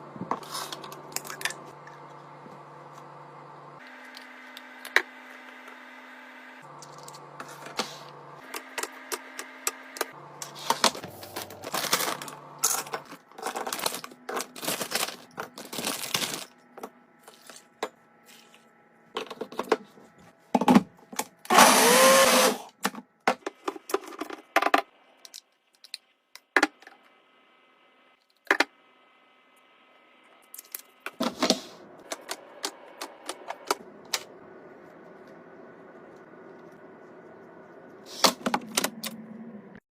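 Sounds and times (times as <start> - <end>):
food packaging being handled: 10.5 - 19.7.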